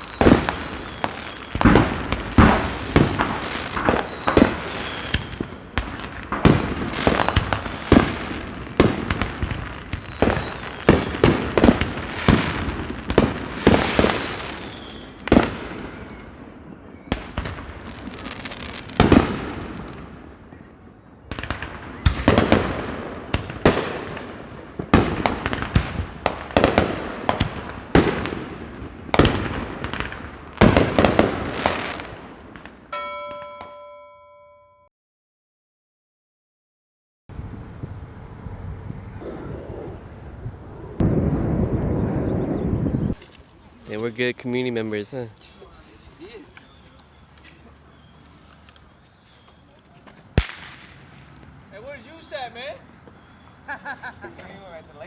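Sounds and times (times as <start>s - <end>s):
fireworks bangs and crackles: 0.0s - 32.9s, 37.3s - 55.0s
bell-like ding: 33.0s - 34.9s.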